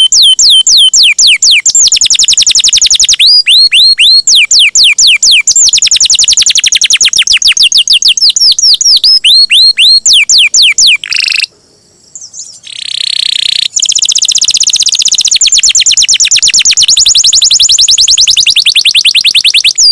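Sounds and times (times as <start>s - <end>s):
canary singing rolling trills: 0.0s - 19.9s.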